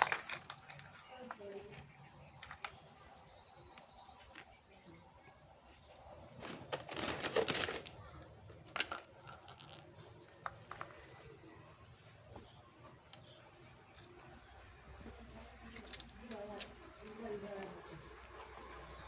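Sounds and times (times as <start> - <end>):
rustling tearing sound: 6.2 - 8.1.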